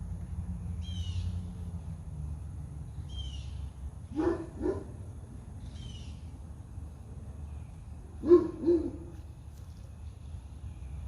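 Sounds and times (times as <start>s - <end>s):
steady low hum: 0.0s - 11.0s
bird chirping: 0.7s - 1.6s, 2.9s - 4.8s, 5.6s - 6.4s
dog barking: 4.1s - 5.0s, 8.2s - 9.1s.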